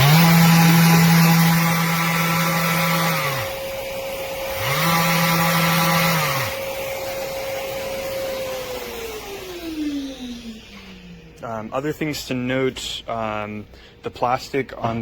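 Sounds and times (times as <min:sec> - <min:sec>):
deeper motor note: 0:00.0 - 0:03.7
orbital sander whine: 0:00.0 - 0:11.4.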